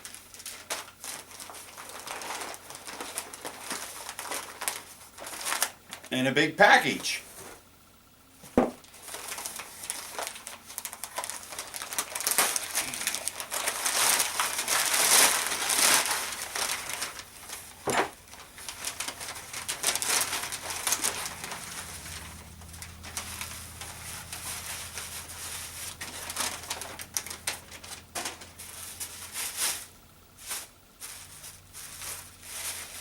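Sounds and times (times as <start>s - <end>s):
packing material crinkling: 0.0s - 7.6s, 8.8s - 33.0s
sharp knocks: 8.5s - 8.8s.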